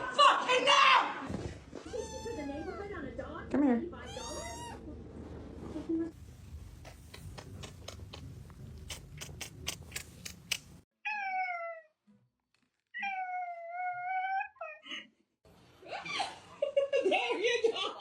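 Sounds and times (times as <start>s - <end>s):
sharp clicks: 7.1s - 10.8s
cat meowing: 11.1s - 12.0s.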